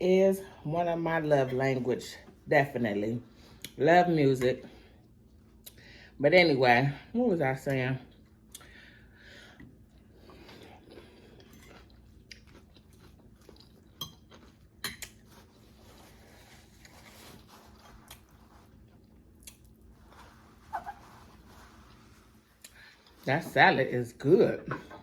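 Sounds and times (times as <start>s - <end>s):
faint chewing of food: 9.5s - 20.5s.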